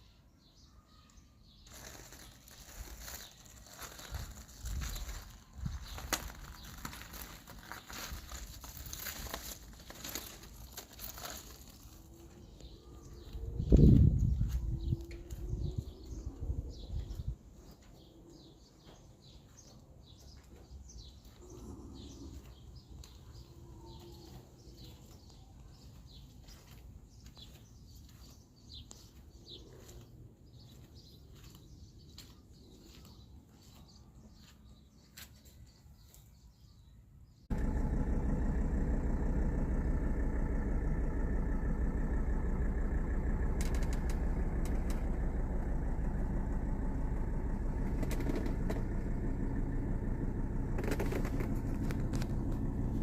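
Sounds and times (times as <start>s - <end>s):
small birds chirping: 0.0s - 53.0s
diesel engine idling: 1.7s - 17.3s, 37.5s - 53.0s.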